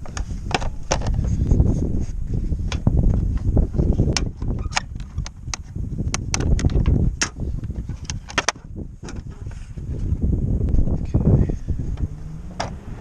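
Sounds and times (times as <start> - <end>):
wind rumble on microphone: 0.0 - 13.0
sharp plastic clicks: 4.1 - 7.4.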